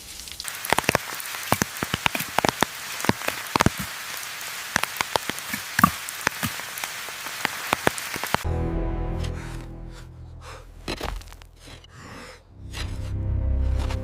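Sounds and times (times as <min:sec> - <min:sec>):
rain hiss: 0:00.0 - 0:08.5
heavy raindrops ticking: 0:00.1 - 0:08.5.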